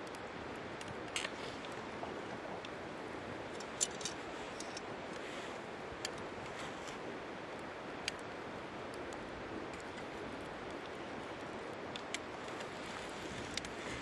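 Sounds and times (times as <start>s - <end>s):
campfire crackling: 0.0s - 14.0s.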